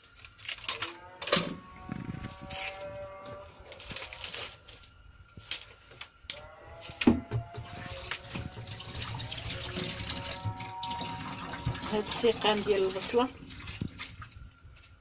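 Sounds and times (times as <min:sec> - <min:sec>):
water running: 0:07.4 - 0:14.6.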